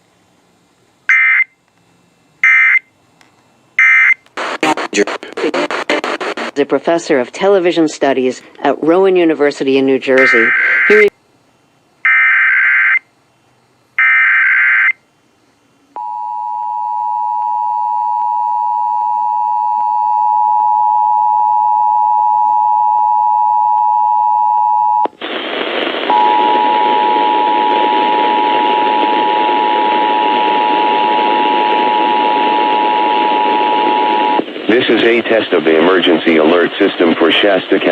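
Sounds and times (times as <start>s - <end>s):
heavy radio hiss: 3.8s - 11.2s, 25.1s - 37.9s
buzzy digital header bursts: 10.2s - 11.1s
two-tone attention signal: 26.1s - 34.4s.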